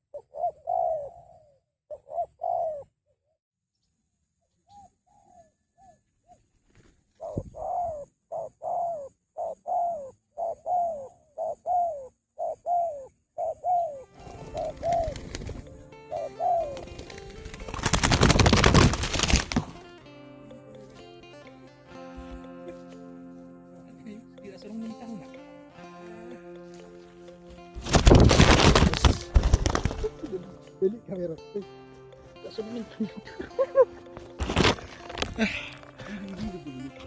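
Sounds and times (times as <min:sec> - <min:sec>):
doves cooing: 0:00.0 - 0:02.9, 0:07.2 - 0:19.9, 0:25.0 - 0:30.8, 0:32.2 - 0:37.0.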